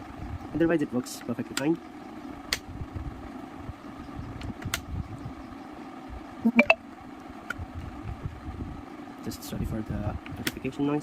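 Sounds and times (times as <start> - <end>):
steady background hum: 0.0 - 11.0
phone notification chime: 6.5 - 6.8.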